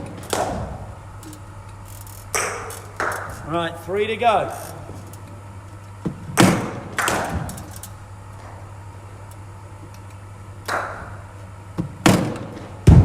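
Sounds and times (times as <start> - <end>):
steady low hum: 0.0 - 13.0
cricket ball knocks ringing: 10.7 - 11.2.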